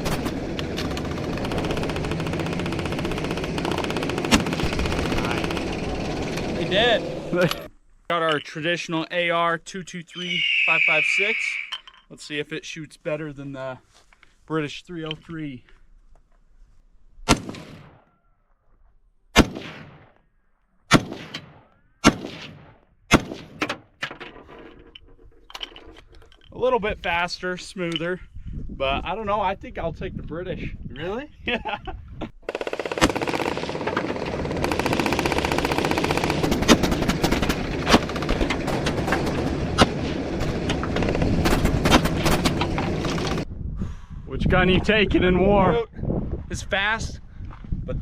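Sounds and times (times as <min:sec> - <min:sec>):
fast even rattle: 0:00.0 - 0:07.7, 0:32.5 - 0:43.5
rifle shot: 0:04.2 - 0:05.2, 0:17.2 - 0:18.0, 0:19.3 - 0:20.1, 0:20.9 - 0:23.8, 0:32.5 - 0:33.9.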